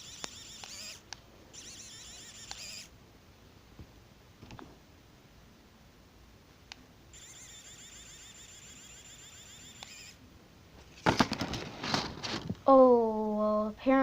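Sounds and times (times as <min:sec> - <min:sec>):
small motor whine: 0:00.0 - 0:02.9, 0:07.2 - 0:10.2.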